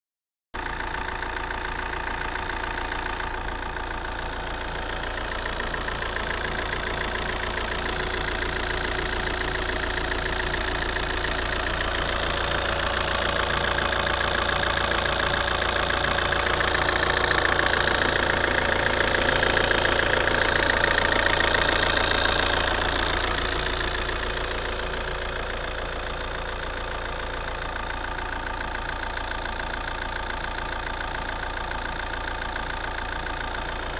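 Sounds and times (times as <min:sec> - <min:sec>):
diesel engine idling: 0:00.6 - 0:33.9.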